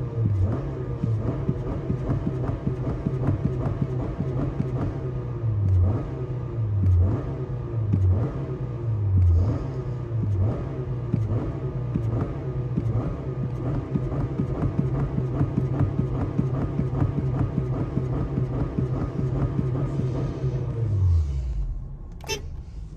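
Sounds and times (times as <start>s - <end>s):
car engine revving: 0.0s - 22.9s
car engine idling: 8.8s - 22.9s.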